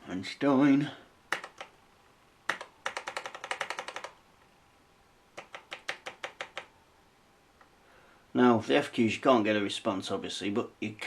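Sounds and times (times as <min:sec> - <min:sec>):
computer keyboard keystrokes: 0:01.3 - 0:01.8, 0:02.5 - 0:04.2, 0:05.4 - 0:06.7.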